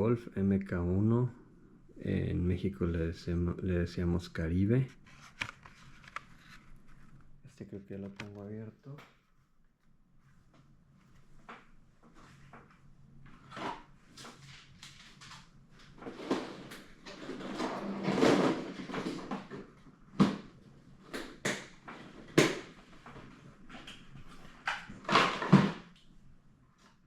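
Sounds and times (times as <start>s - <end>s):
packaging rustling and scraping: 4.9s - 7.4s, 13.2s - 20.6s.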